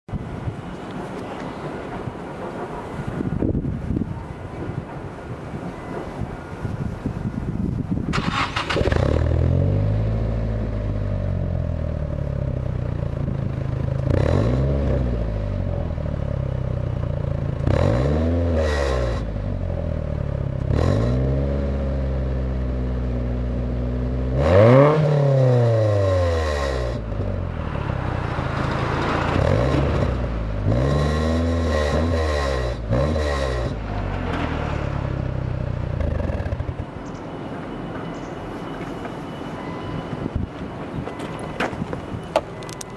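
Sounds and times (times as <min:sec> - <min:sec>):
car exhaust revving: 0:08.2 - 0:36.8.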